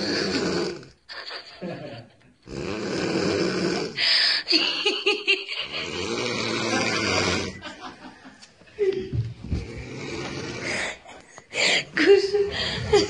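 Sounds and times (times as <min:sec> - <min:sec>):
woman snoring: 0:00.0 - 0:01.0, 0:02.5 - 0:04.5, 0:05.6 - 0:07.6, 0:09.6 - 0:12.0.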